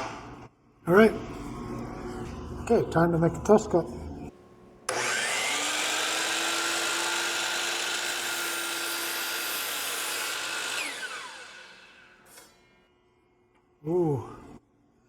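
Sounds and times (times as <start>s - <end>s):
miter saw running: 4.9s - 12.5s
saw spinning down whine: 4.9s - 12.6s.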